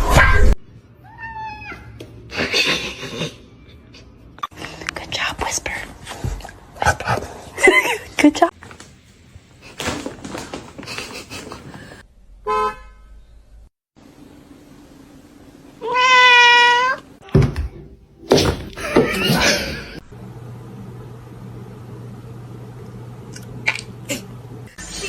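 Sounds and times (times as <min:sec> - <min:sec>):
cat meowing: 0:15.8 - 0:17.0
knocks and rustles: 0:17.2 - 0:19.3.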